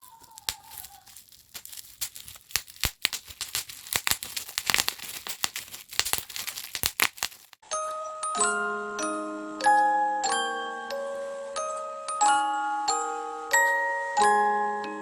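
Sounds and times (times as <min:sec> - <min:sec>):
gift wrapping crinkling and tearing: 0:00.0 - 0:07.6.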